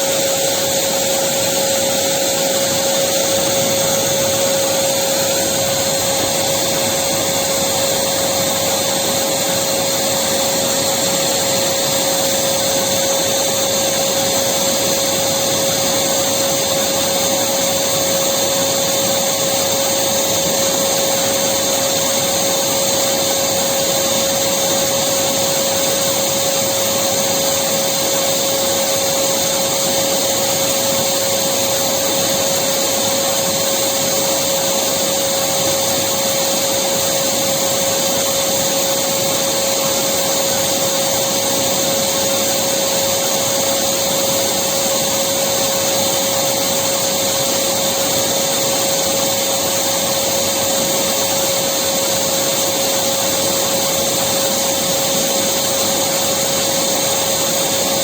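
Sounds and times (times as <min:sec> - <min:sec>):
vacuum cleaner running: 0:00.0 - 0:58.0.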